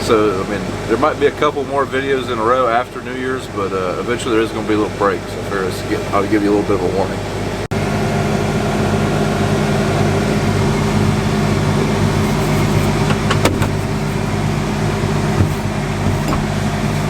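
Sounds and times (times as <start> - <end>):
farm vehicle engine running: 7.8 - 17.0.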